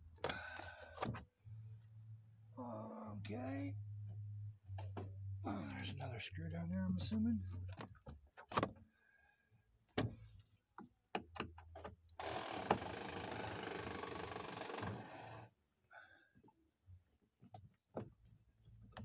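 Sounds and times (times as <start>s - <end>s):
cordless drill running: 12.2s - 15.5s.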